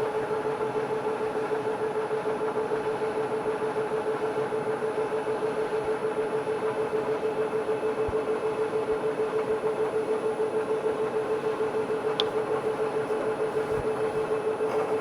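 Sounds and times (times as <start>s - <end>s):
milling machine spindle humming: 10.5s - 15.0s.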